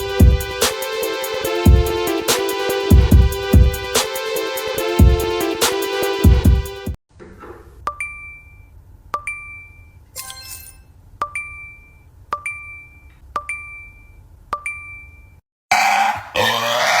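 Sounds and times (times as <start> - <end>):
metal object dinging: 9.2 - 14.1.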